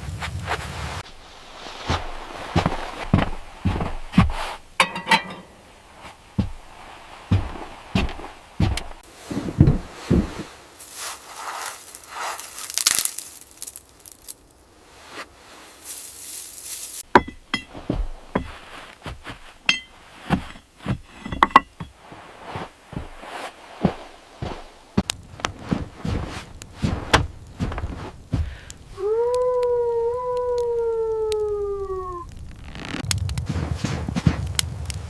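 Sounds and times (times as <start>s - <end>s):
thumps: 2.6s - 5.7s, 6.4s - 10.5s, 17.1s - 28.7s
knocks and clinks: 4.8s - 5.6s, 17.1s - 17.8s, 19.6s - 21.9s
hiss: 9.1s - 13.4s, 14.8s - 17.0s.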